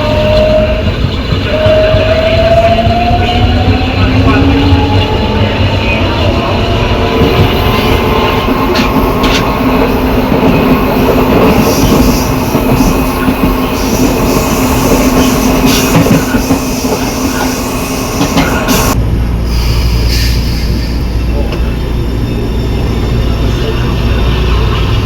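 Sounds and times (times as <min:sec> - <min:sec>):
low train rumble: 0:00.0 - 0:25.0.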